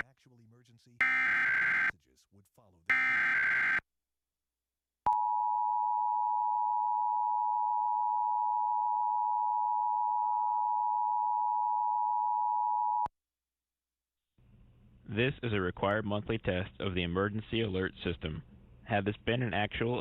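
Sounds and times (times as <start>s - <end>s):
digital data screech: 1.0s - 1.9s, 2.9s - 3.8s
two-tone attention signal: 1.0s - 1.9s, 2.9s - 3.8s.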